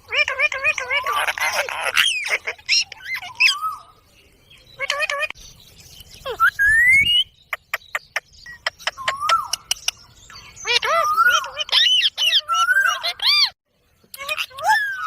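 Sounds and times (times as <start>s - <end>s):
parrot squawking and chattering: 0.0s - 4.0s, 4.7s - 5.4s, 7.4s - 15.0s.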